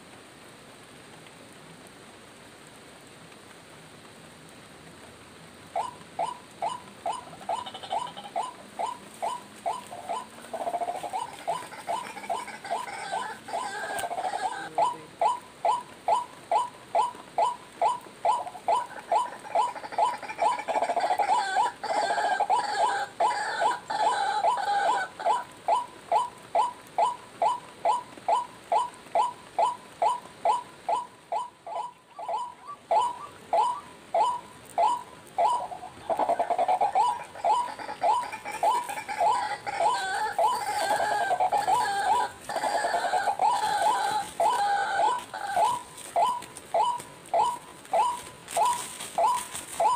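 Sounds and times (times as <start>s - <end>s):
waterhen calling: 5.7s - 49.9s
higher bird voice: 5.8s - 49.9s
rail calls through a speaker: 14.4s - 15.4s.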